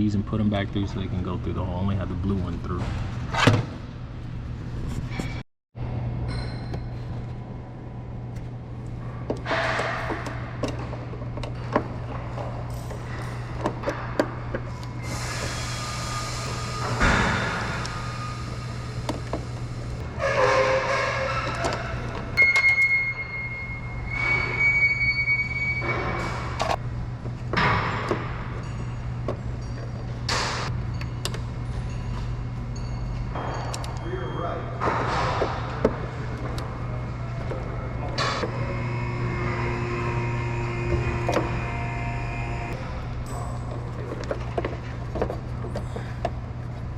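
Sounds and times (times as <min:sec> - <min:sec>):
steady low hum: 0:00.0 - 0:46.9
short high squeaks: 0:20.2 - 0:26.6.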